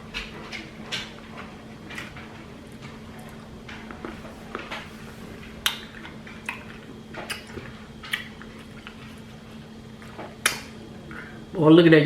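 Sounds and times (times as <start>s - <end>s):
low steady hum: 0.0s - 12.0s
chewing food: 0.1s - 11.2s
mouth smacks: 2.0s - 9.4s.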